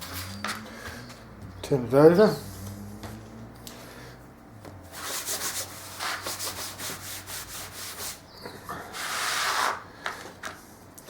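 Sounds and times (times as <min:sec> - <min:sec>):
rubbing over sandpaper: 0:04.9 - 0:08.2.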